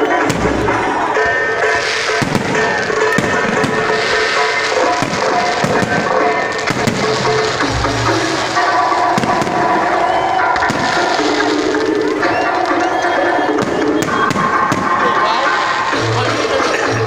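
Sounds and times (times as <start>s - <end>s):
fireworks bursting and crackling: 0.0s - 17.0s
loud music: 0.0s - 17.0s
deep firework booms: 1.9s - 12.1s.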